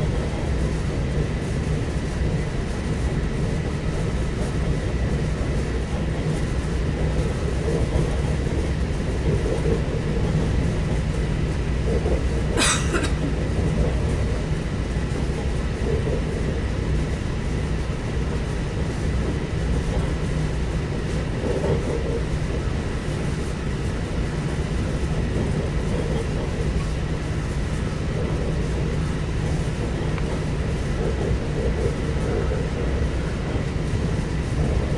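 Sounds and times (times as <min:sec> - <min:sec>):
train wheels rumbling: 0:00.0 - 0:34.9.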